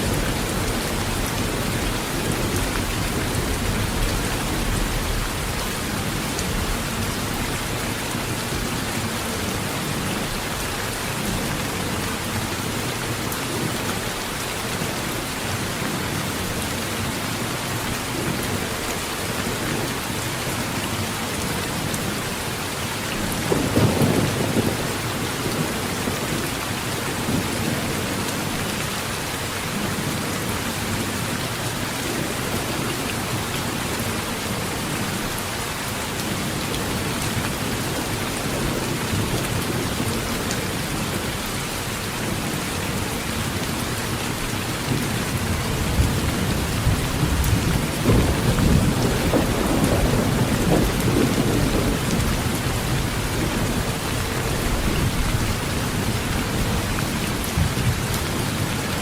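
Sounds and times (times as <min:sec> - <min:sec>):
heavy rain on a metal roof: 0:00.0 - 0:59.0
thunder rolling: 0:45.7 - 0:53.8.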